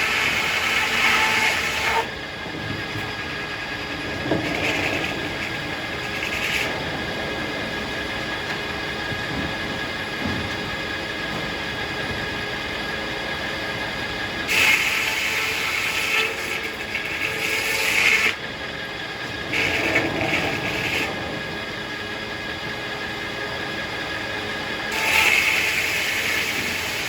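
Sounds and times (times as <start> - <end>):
saw blade cutting log: 0.0 - 2.1, 3.5 - 6.7, 14.5 - 18.4, 19.5 - 21.1, 24.9 - 27.0
sawmill blade drone: 0.0 - 27.0.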